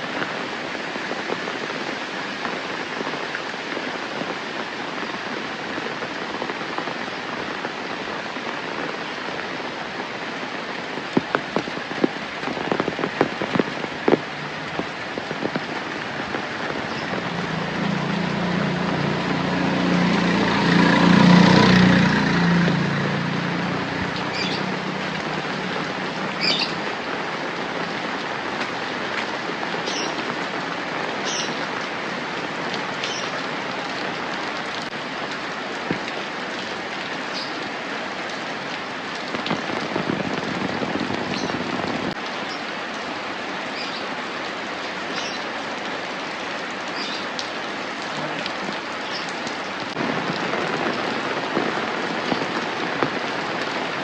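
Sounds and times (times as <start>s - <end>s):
steady rain falling: 0.0s - 54.0s
engine passing: 17.2s - 26.1s.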